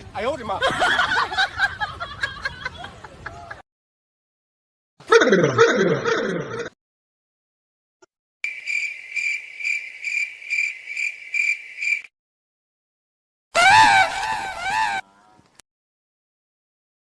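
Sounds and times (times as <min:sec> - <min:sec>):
cricket chirping: 0:08.4 - 0:12.1.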